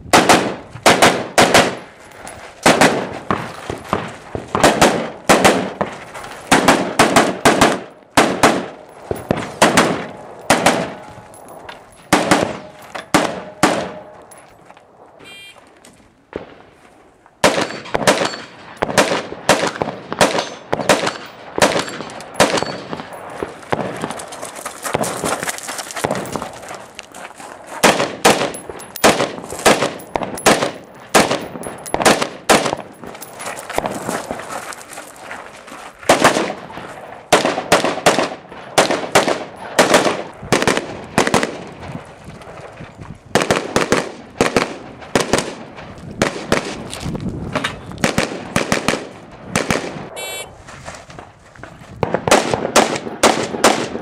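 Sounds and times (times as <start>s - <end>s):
rifle firing rapid shots: 0.1s - 1.8s, 2.6s - 5.9s, 6.5s - 11.1s, 12.1s - 14.1s, 17.4s - 24.1s, 27.8s - 33.0s, 36.1s - 36.6s, 37.3s - 41.7s, 43.4s - 46.8s, 48.0s - 50.4s, 52.1s - 54.0s
gunshot echo: 12.1s - 14.1s, 17.4s - 23.1s.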